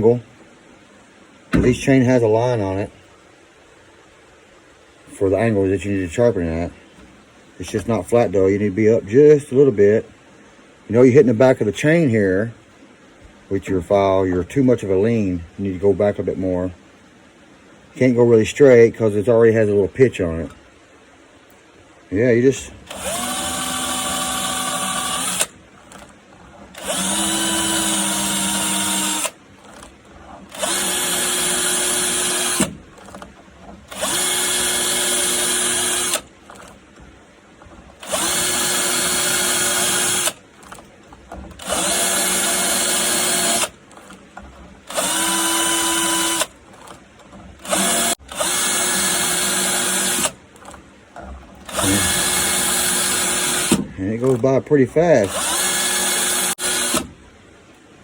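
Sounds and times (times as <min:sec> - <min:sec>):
drill filing chainsaw chain: 0:22.8 - 0:26.1, 0:26.7 - 0:33.2, 0:33.9 - 0:36.8, 0:37.9 - 0:40.9, 0:41.6 - 0:44.2, 0:44.8 - 0:47.0, 0:47.6 - 0:50.8, 0:51.6 - 0:57.1.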